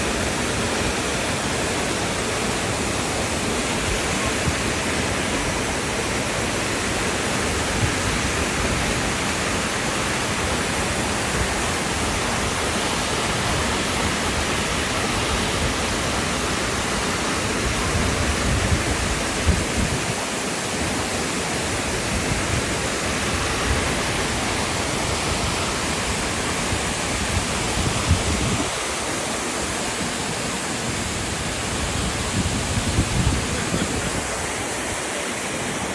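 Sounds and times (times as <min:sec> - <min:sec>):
fast-flowing water rushing: 0:00.0 - 0:35.9.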